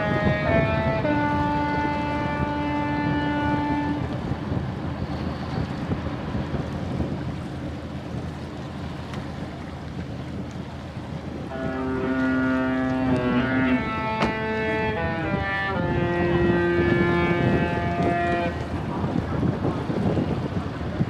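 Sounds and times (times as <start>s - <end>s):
ship horn playing a tune: 0.0s - 5.4s, 11.4s - 20.5s
wind buffeting microphone: 0.0s - 21.0s.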